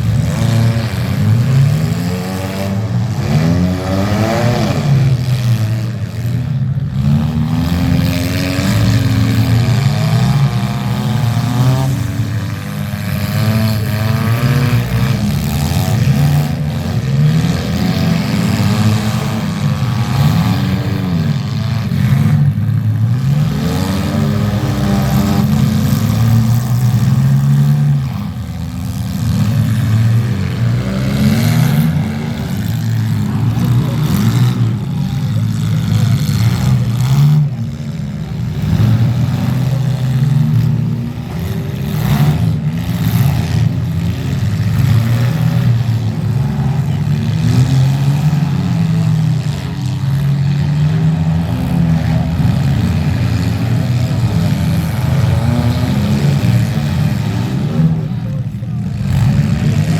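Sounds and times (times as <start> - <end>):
car engines revving: 0.0 - 59.9.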